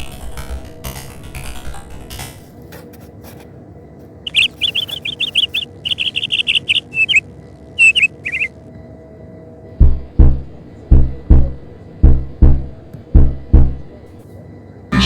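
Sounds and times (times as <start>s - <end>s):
bird chirping: 4.3s - 8.5s.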